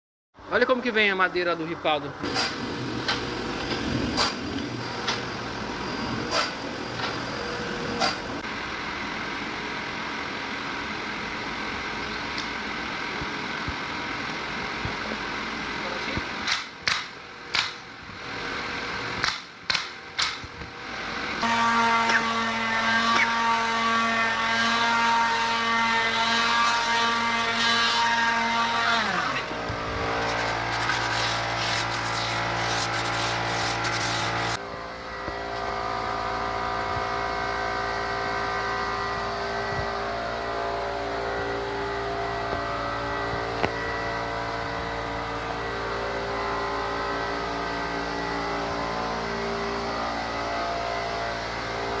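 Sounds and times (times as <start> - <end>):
woodworking machine motor drone: 1.8 - 16.0, 18.1 - 52.0.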